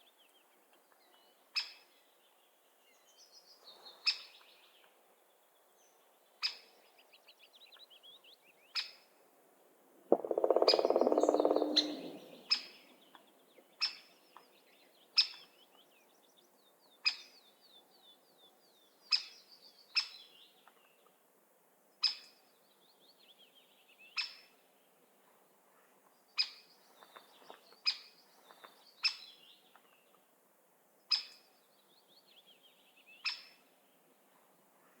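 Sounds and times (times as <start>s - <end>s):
birds singing: 10.1s - 16.4s.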